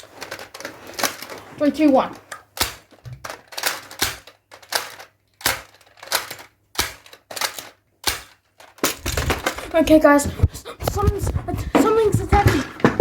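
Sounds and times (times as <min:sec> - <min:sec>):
foam dart blaster clacks: 0:02.5 - 0:03.0, 0:03.6 - 0:09.7.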